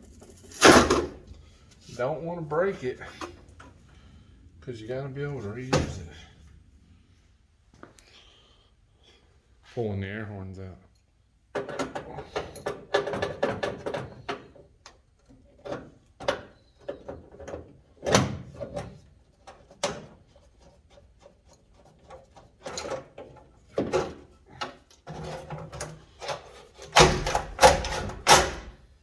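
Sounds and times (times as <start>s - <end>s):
knocks and rattles of dash parts: 11.5s - 29.0s.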